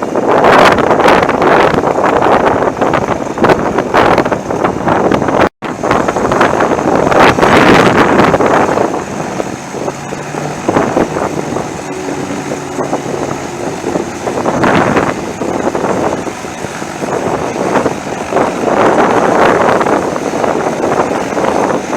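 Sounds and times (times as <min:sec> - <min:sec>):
wind buffeting microphone: 0:00.0 - 0:21.9
paramotor engine running: 0:06.0 - 0:21.9.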